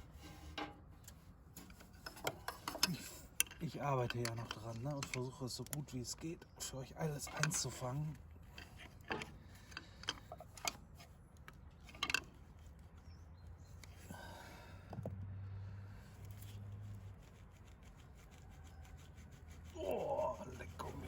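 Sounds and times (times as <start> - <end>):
hand tools clicking and knocking: 1.7 - 5.8, 7.2 - 7.8.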